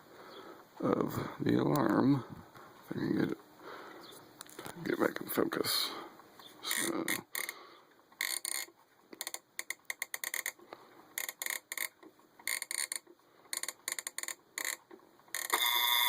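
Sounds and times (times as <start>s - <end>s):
alarm clock knob clicking: 12.5s - 16.0s.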